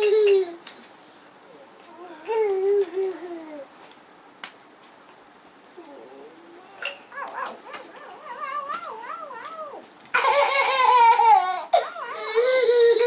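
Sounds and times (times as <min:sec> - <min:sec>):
toddler whining and wailing: 0:01.9 - 0:03.7, 0:05.8 - 0:13.0.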